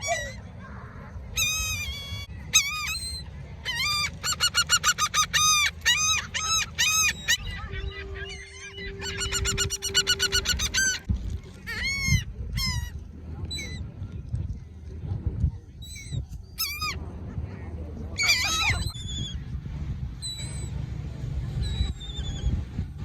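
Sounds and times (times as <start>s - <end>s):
birds calling harshly: 0.0s - 11.1s, 18.1s - 19.4s
steady low tone: 6.4s - 11.5s.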